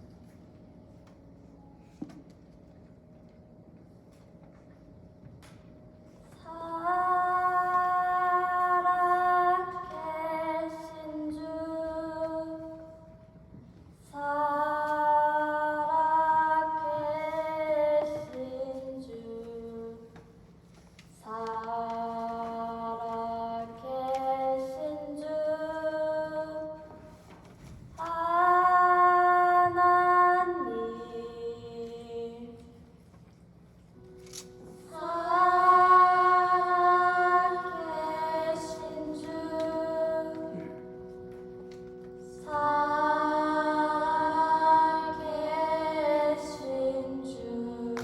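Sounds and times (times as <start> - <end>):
woman singing: 6.4 - 13.1, 14.0 - 20.2, 21.2 - 27.0, 28.0 - 32.8, 34.8 - 40.8, 42.2 - 48.0.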